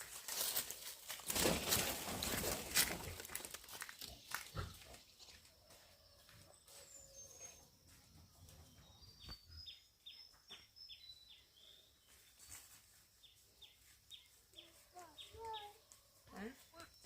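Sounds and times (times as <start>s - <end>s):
small bird chirping: 6.5s - 17.0s.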